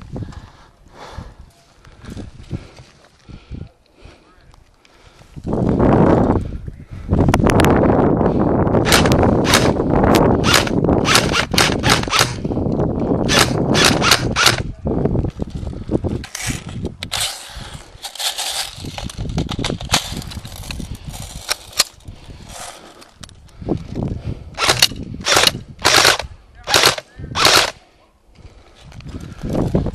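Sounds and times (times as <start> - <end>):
airsoft guns firing: 13.3 - 14.6, 24.6 - 27.8.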